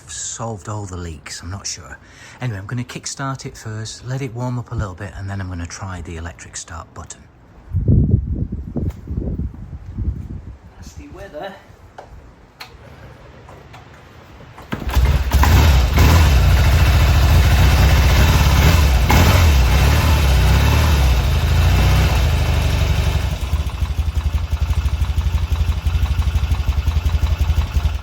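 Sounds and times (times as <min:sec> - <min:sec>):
motorcycle kick-start: 0:14.6 - 0:28.0
motorcycle engine running: 0:14.8 - 0:28.0.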